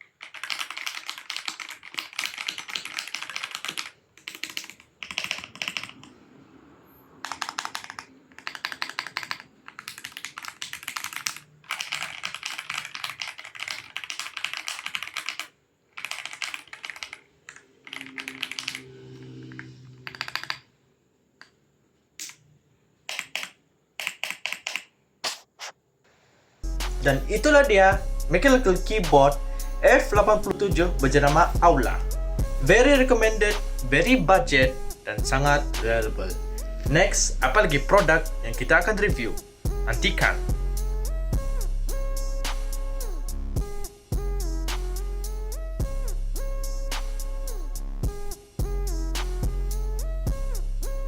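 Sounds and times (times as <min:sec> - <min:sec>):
mechanical keyboard typing: 0:00.0 - 0:06.2, 0:07.2 - 0:18.8, 0:19.6 - 0:20.7, 0:23.1 - 0:25.0.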